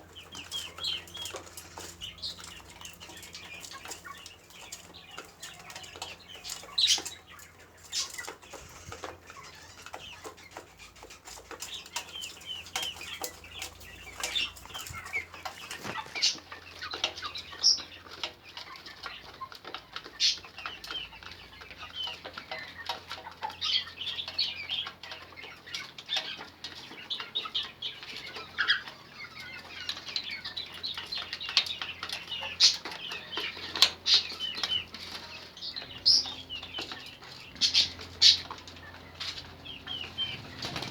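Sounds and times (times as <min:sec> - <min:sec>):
birds fluttering wings: 0:39.2 - 0:40.9.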